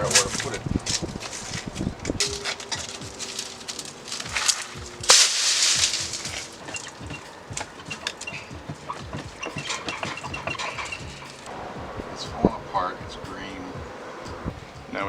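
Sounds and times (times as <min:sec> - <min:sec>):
knocks and clatter of metal parts: 0:00.0 - 0:11.5.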